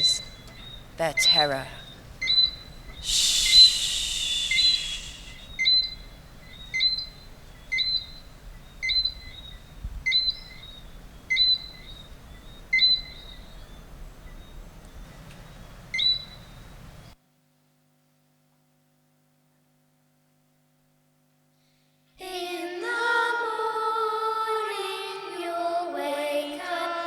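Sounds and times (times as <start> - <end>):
flute imitating bird call: 0.0 - 6.1.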